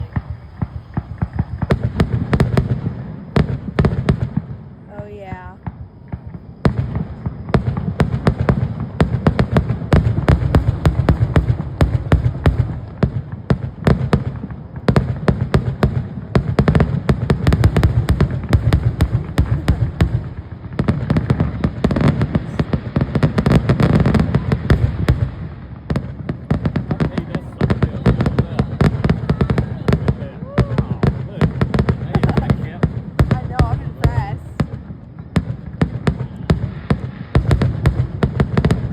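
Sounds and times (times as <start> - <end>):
fireworks cracks and bangs: 0.0 - 38.9.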